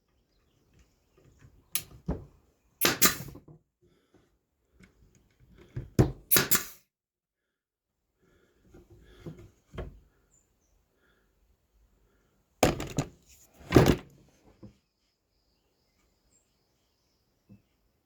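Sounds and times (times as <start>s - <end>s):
nail gun firing: 2.8s - 3.4s, 6.3s - 6.8s
wood boards knocking: 12.6s - 13.1s.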